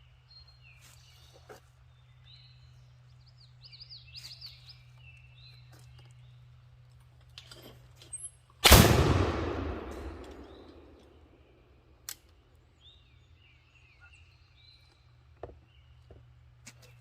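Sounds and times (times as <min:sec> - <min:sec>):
shotgun shot: 0:08.6 - 0:11.3
faint high wavering calls: 0:12.8 - 0:15.0.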